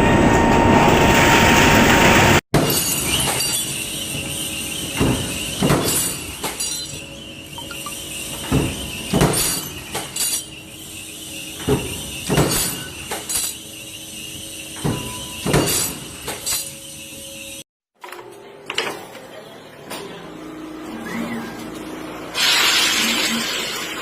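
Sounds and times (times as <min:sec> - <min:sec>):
machinery clanks and knocks: 0:00.0 - 0:10.6, 0:11.5 - 0:13.6, 0:14.7 - 0:16.8
different machine sound: 0:00.0 - 0:17.7
high-pitched machine whine: 0:00.0 - 0:17.7.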